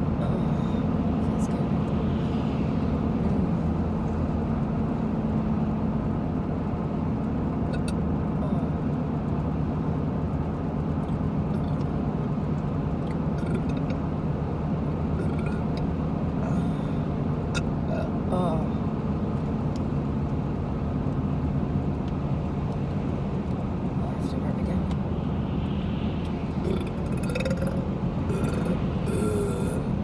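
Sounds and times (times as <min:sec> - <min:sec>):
car road and engine noise: 0:00.0 - 0:30.0.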